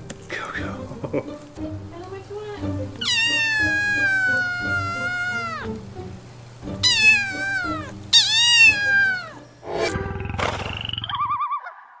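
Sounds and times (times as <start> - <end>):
background music: 0.0 - 10.8
cat meowing: 3.0 - 5.8, 6.8 - 9.4.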